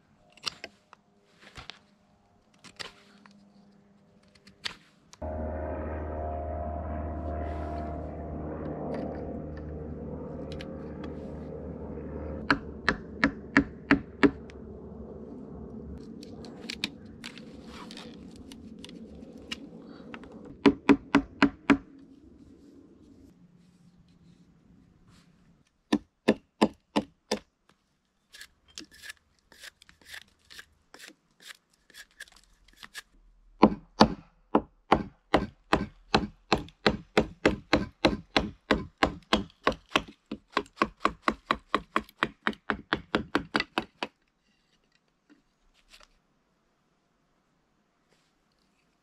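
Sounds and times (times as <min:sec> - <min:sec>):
chopping strikes on wood: 0:33.6 - 0:44.1.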